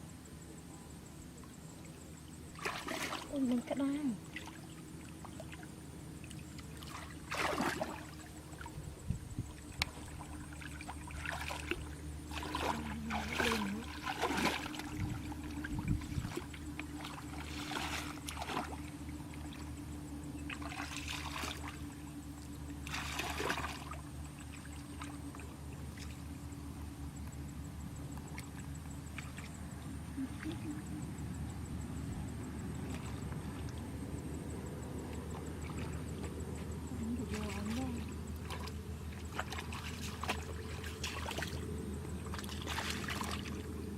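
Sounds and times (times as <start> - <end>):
low steady hum: 0.0 - 43.9
water splashing and trickling: 2.5 - 26.5, 34.8 - 43.9.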